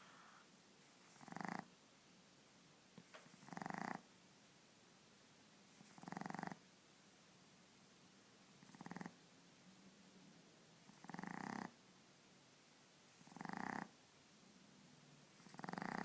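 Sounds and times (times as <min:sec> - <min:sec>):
puppy snoring: 0:00.0 - 0:01.7, 0:03.2 - 0:04.1, 0:05.8 - 0:06.6, 0:08.6 - 0:09.2, 0:10.8 - 0:11.8, 0:13.1 - 0:14.0, 0:15.2 - 0:16.0.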